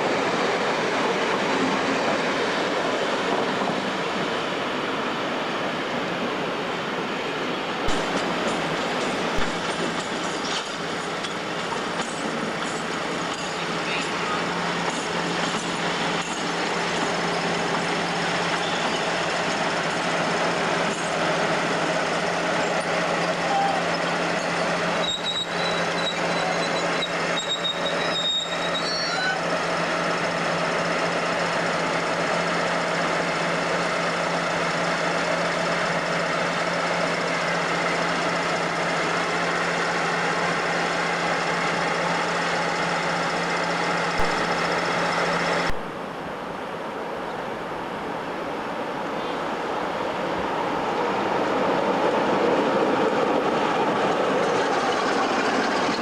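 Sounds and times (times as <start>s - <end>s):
freight train rumbling past: 0.0s - 56.0s
high-pitched squeal: 12.0s - 30.2s.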